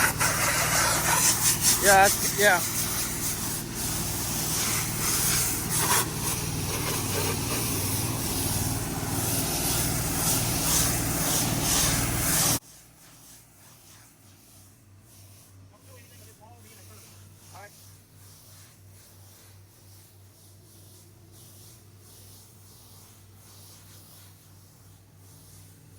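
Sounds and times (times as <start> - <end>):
pressure washer engine hum: 0.0 - 12.9
water spray hissing: 0.0 - 25.9.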